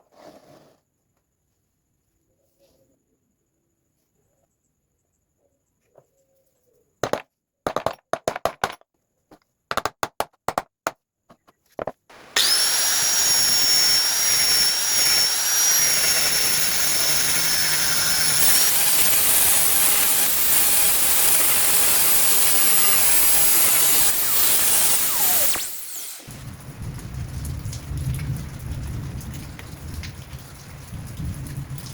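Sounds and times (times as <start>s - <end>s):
short sharp knocks: 9.7s - 12.0s
power tool whining on wood: 12.2s - 26.4s.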